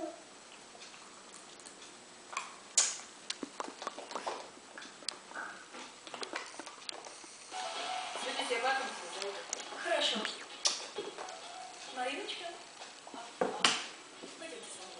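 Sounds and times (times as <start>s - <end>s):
baby mouth clicks and smacks: 0.5s - 7.1s, 10.2s - 11.4s.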